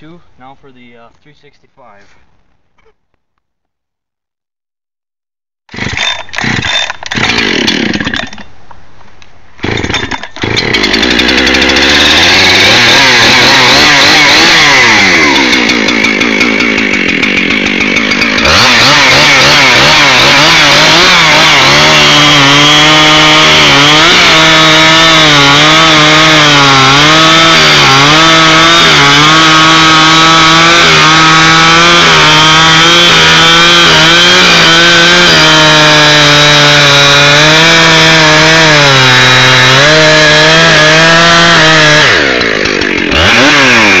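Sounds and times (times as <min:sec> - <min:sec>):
chainsaw revving: 0:05.7 - 0:08.4, 0:09.6 - 0:44.0
chainsaw cutting wood: 0:05.7 - 0:08.6, 0:09.6 - 0:44.0.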